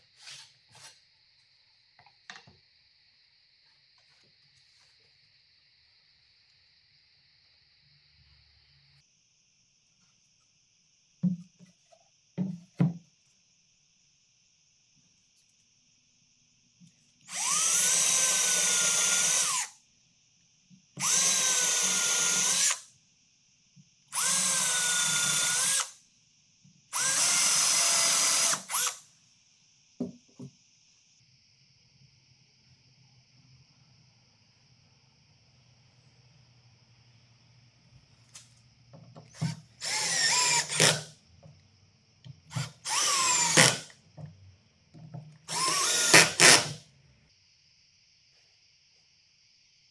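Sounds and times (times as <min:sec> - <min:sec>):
electric drill running: 0:17.3 - 0:19.7, 0:21.0 - 0:22.9, 0:24.1 - 0:26.0, 0:27.0 - 0:29.0, 0:39.3 - 0:41.1, 0:42.5 - 0:43.9, 0:45.5 - 0:46.8.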